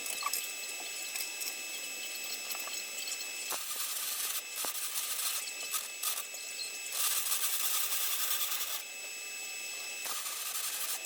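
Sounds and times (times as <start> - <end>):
welding arc crackling: 0.0 - 8.8, 10.0 - 11.0.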